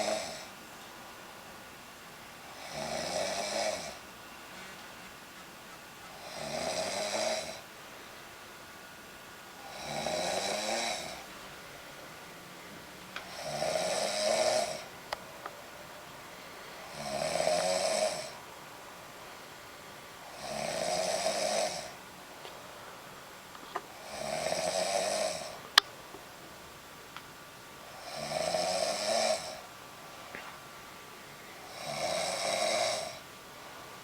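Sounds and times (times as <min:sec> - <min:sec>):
woman snoring: 0:00.0 - 0:00.5, 0:02.5 - 0:04.0, 0:06.2 - 0:07.7, 0:09.6 - 0:11.3, 0:13.2 - 0:14.9, 0:16.9 - 0:18.4, 0:20.3 - 0:22.0, 0:23.9 - 0:25.6, 0:27.9 - 0:29.6, 0:31.6 - 0:33.2.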